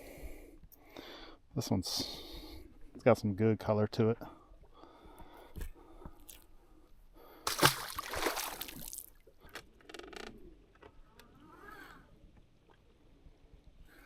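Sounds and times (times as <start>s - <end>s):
water splashing loudly: 7.5s - 9.1s.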